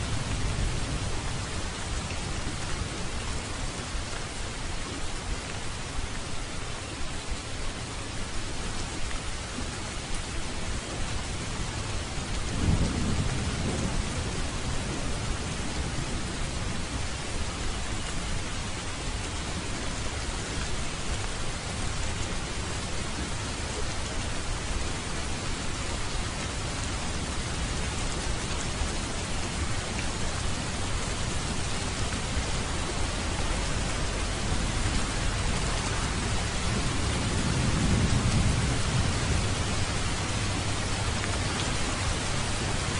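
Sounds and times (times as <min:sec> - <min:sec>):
steady rain falling: 0:00.0 - 0:42.9
thunder rolling: 0:34.0 - 0:40.6.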